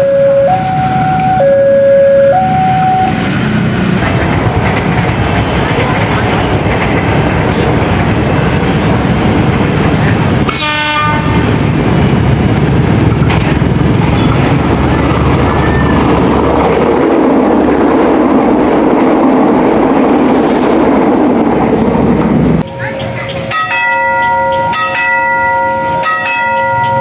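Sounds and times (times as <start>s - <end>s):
train horn blast: 0.0s - 3.2s, 10.5s - 11.5s
train rumbling and rattling past: 0.0s - 26.8s.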